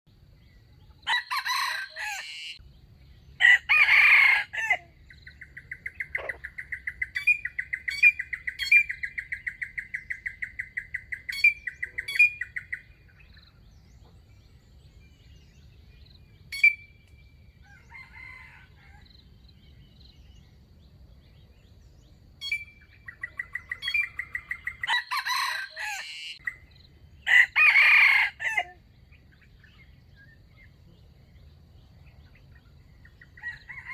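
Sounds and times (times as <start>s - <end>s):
rooster crowing: 1.0s - 2.6s, 3.4s - 4.9s, 17.6s - 19.1s, 24.8s - 26.4s, 27.3s - 28.8s, 33.4s - 33.9s.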